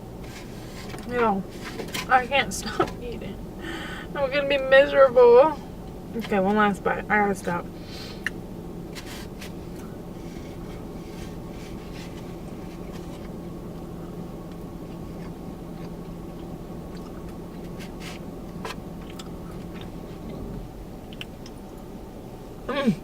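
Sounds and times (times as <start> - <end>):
low hum: 0.0 - 23.0
light scratchy rustles: 0.2 - 3.0, 8.9 - 13.9, 17.5 - 18.8
soft chewing: 8.2 - 22.0.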